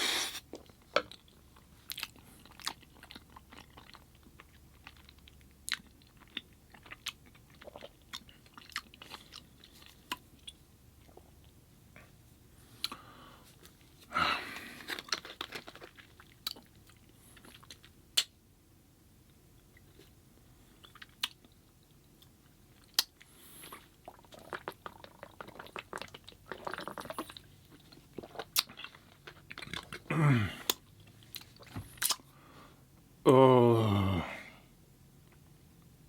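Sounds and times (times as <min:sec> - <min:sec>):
person chewing food: 0:00.0 - 0:12.1, 0:14.7 - 0:18.3, 0:19.6 - 0:32.3
short falling vocal sound: 0:33.3 - 0:34.6.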